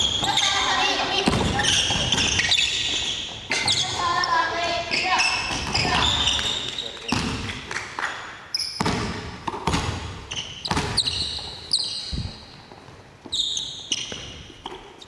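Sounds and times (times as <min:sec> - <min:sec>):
shoes squeaking on court: 0:00.0 - 0:15.0
basketball bouncing on wooden floor: 0:01.1 - 0:03.8, 0:05.0 - 0:06.4, 0:07.1 - 0:07.6, 0:08.8 - 0:11.6.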